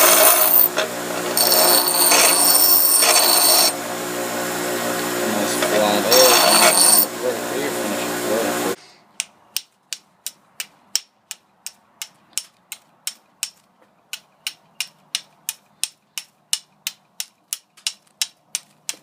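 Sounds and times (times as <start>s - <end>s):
steel striker clicking on flint: 9.2s - 19.0s.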